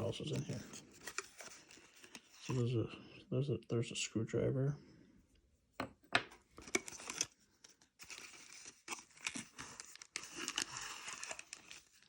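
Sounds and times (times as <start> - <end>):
packaging rustling and tearing: 6.6 - 12.0.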